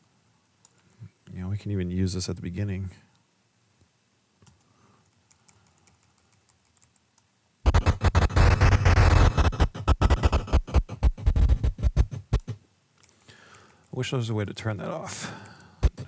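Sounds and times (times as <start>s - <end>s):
choppy stuttering audio fragments: 7.7s - 12.6s.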